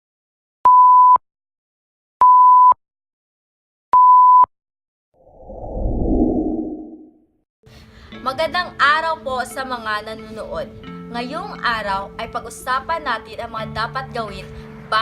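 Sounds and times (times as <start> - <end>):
low rumbling whoosh: 5.2 - 7.2.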